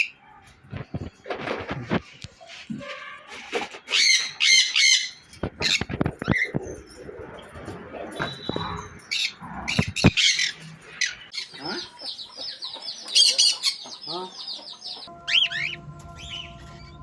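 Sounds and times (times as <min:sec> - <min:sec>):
cockatiels squawking: 0:08.2 - 0:16.5.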